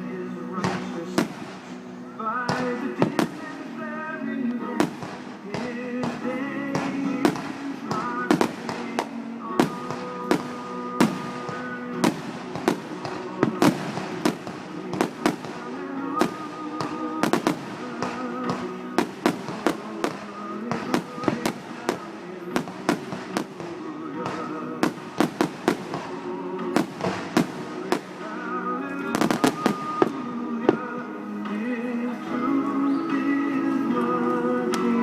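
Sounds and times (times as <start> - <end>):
music playing: 0.0 - 35.0
fireworks bangs and crackles: 0.6 - 31.6.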